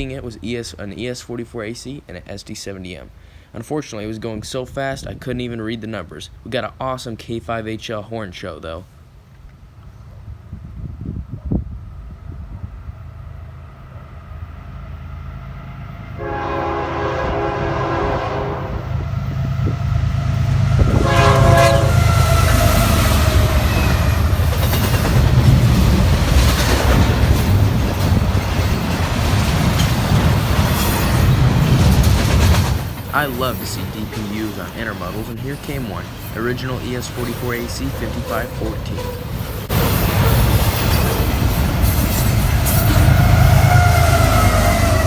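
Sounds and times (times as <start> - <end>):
passing train rumbling: 0.0 - 2.2, 8.9 - 45.0
train air horn blasts: 15.7 - 24.4, 42.6 - 45.0.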